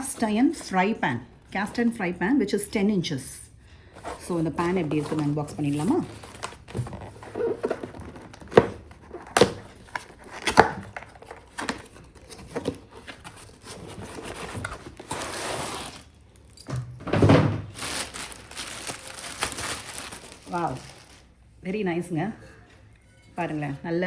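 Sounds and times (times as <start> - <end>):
packaging rustling: 4.0 - 16.6, 17.6 - 21.4.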